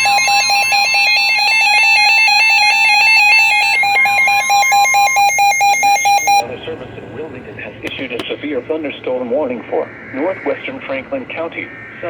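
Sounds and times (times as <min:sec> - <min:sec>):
warbling electronic alert tone: 0:00.0 - 0:06.4.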